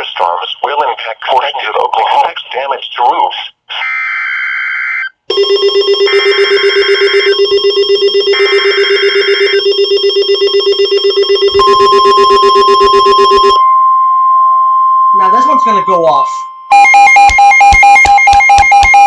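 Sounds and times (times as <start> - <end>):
rapid pulsing alarm beeping: 5.3 - 19.0
steady warning alert tone: 15.0 - 19.0.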